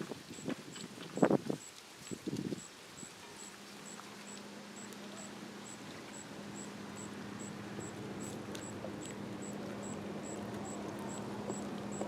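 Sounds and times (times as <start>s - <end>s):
water lapping at shoreline: 0.0s - 12.0s
steady low hum: 2.5s - 12.0s
insect chirping in pulses: 4.8s - 8.0s.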